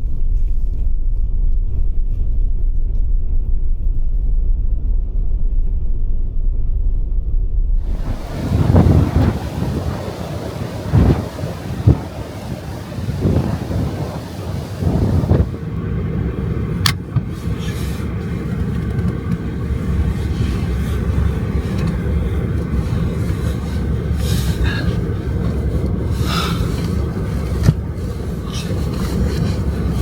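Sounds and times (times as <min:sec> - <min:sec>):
vehicle engine rumble: 0:00.0 - 0:30.0
faint steady hum: 0:07.8 - 0:30.0.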